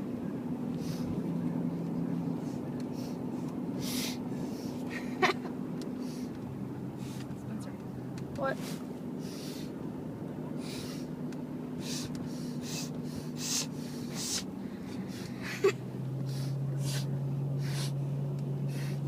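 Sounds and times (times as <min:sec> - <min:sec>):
low hum: 0:00.0 - 0:19.0
nose sniffing: 0:11.8 - 0:15.3, 0:16.3 - 0:18.0.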